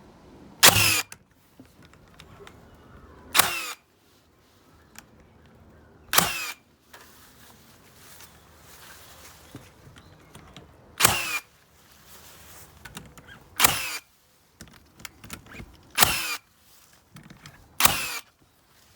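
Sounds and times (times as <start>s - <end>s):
nail gun firing with whine: 0.6s - 1.1s, 3.4s - 3.8s, 6.1s - 6.6s, 11.0s - 11.4s, 13.6s - 14.0s, 16.0s - 16.4s, 17.8s - 18.3s
small handling clicks: 0.6s - 3.8s, 4.9s - 7.2s, 9.4s - 11.5s, 12.6s - 18.6s.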